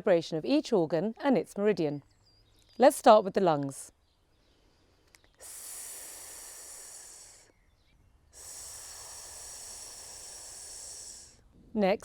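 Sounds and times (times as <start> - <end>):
woman exhaling a hissing sss: 5.4 - 7.5, 8.3 - 11.5.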